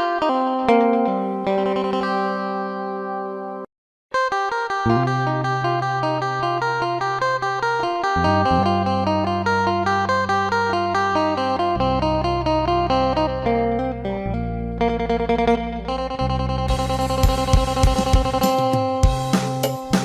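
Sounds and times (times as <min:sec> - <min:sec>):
plucked lute melody: 0:04.2 - 0:16.6
low bass notes: 0:04.9 - 0:07.0, 0:08.1 - 0:18.4
percussion: 0:16.7 - 0:20.0.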